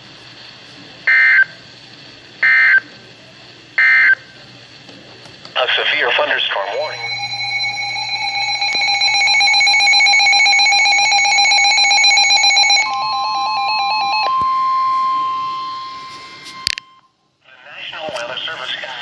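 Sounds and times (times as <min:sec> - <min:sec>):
steady warning alarm tone: 0:01.1 - 0:01.6, 0:02.4 - 0:02.9, 0:03.8 - 0:04.2, 0:06.2 - 0:17.2
rapidly pulsing electronic beep: 0:06.6 - 0:17.1.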